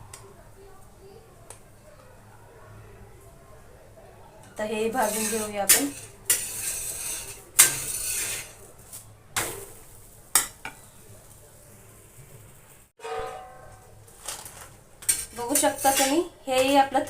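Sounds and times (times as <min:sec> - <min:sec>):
spatula scraping griddle: 0:04.8 - 0:10.9, 0:14.1 - 0:17.0
flatbread sizzling on griddle: 0:04.9 - 0:13.0, 0:14.1 - 0:16.2.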